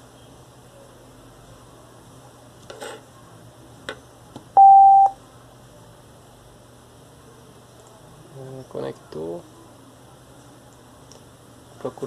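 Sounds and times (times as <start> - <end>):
speaker beep: 4.6 - 5.2.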